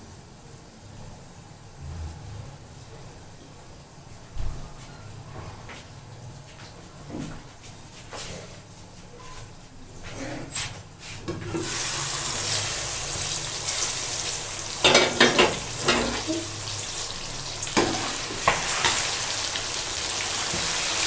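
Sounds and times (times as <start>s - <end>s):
masala sizzling in oil: 11.0s - 21.0s
spoon scraping a pan: 14.8s - 17.0s, 17.6s - 19.3s.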